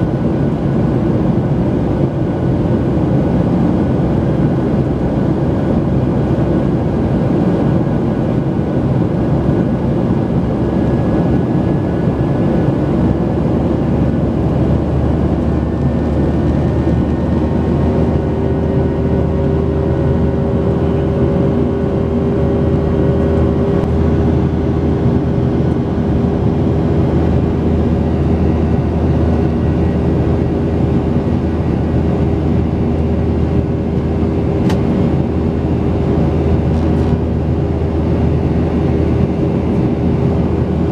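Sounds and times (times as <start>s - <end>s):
aircraft cabin engine rush: 0.0s - 40.9s
steady engine tone: 0.0s - 40.9s.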